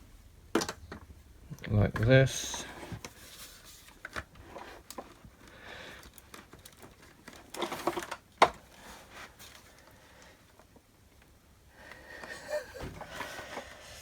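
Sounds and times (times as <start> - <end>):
plastic parts clicking and knocking: 0.5 - 1.1, 4.0 - 8.7
plastic parts clattering: 3.9 - 9.8.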